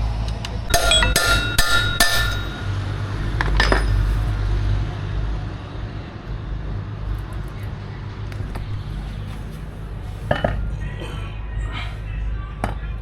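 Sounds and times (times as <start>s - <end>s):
steady low hum: 0.0s - 13.0s
metal tools clinking: 0.7s - 2.8s, 3.4s - 4.2s, 10.1s - 10.7s.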